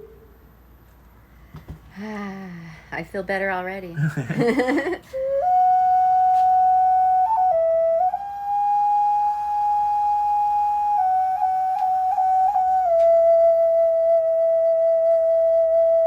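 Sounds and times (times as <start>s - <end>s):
flute playing long breathy notes: 0.0s - 0.3s, 5.1s - 16.0s.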